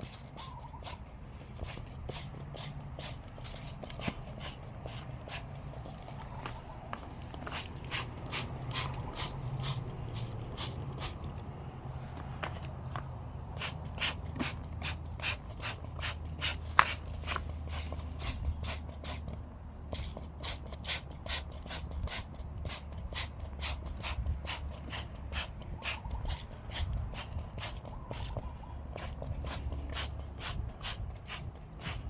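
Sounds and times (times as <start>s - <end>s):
paintbrush scrubbing circuit boards: 7.5s - 11.4s.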